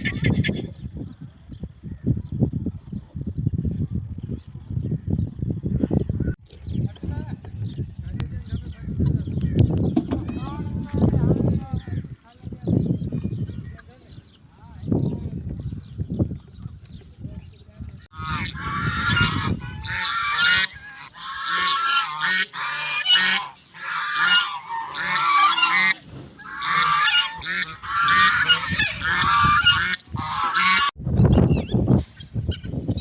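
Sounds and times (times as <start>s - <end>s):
flock of fowl honking: 18.1s - 31.0s.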